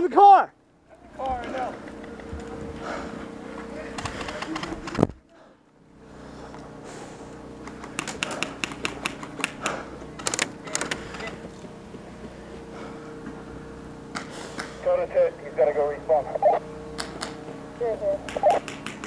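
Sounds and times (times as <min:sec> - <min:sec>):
airsoft guns firing: 0:07.8 - 0:11.0, 0:18.3 - 0:19.0.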